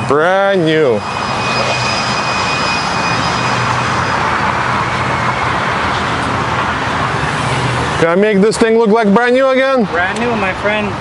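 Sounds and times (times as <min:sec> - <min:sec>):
low hum: 0:00.0 - 0:08.0
machine rushing noise: 0:00.0 - 0:08.8
thin high whine: 0:00.0 - 0:09.8.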